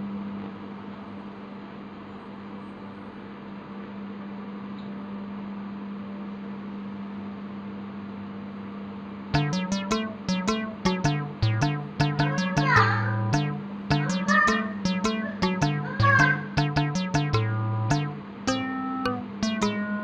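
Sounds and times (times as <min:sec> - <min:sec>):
music with plucked notes: 0:09.4 - 0:20.0.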